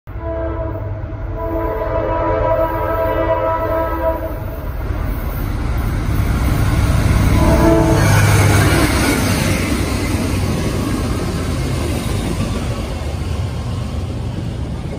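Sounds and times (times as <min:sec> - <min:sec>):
locomotive air horn: 0:00.1 - 0:04.6, 0:07.3 - 0:08.9
locomotive rumble: 0:01.0 - 0:14.9.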